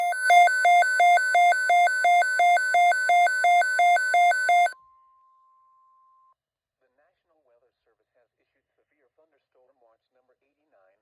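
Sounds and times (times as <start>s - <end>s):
faint steady tone: 0.0s - 4.8s.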